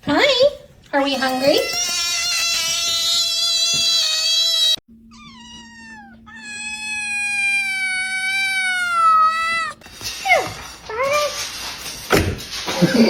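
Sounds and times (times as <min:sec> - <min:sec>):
cat meowing: 0:01.4 - 0:09.8.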